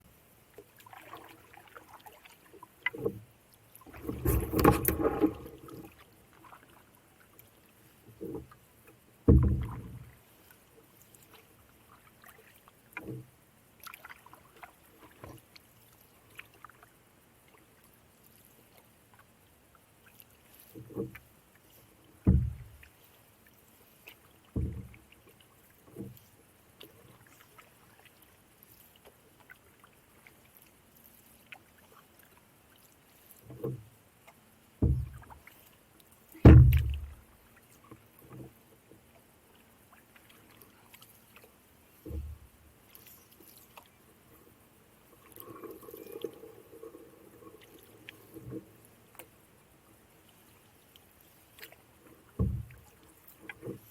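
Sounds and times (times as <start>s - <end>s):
paddle strokes splashing water: 0.0s - 53.9s.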